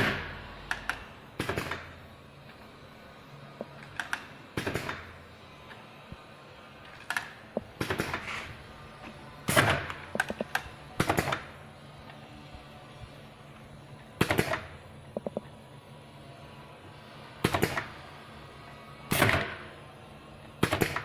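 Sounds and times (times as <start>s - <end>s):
machine low hum: 0.0s - 21.0s.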